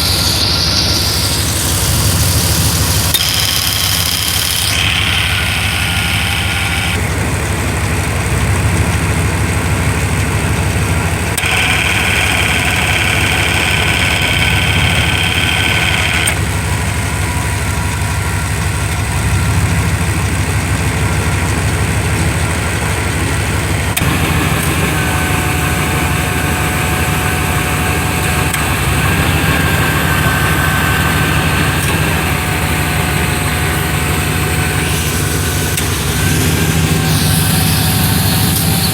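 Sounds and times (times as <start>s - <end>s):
engine idling: 0.0s - 38.9s
high whine: 0.0s - 38.9s.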